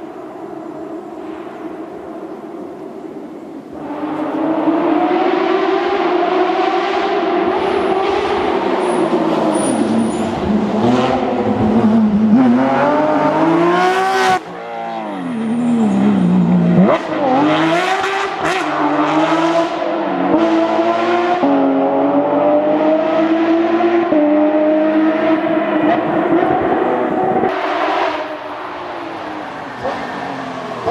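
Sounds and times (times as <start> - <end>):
rally car engine at high revs: 3.7 - 30.9.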